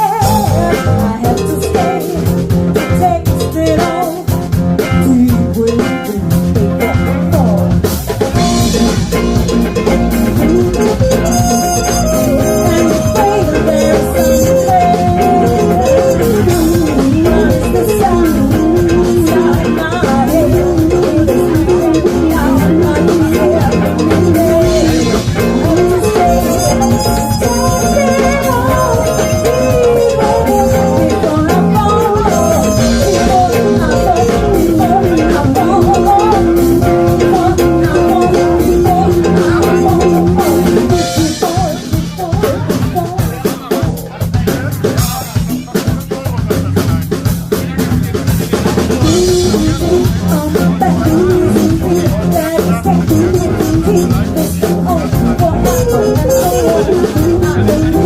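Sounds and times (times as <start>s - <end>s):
drums steady beat: 0.0s - 58.0s
wavering melody line: 8.4s - 42.3s, 49.0s - 58.0s.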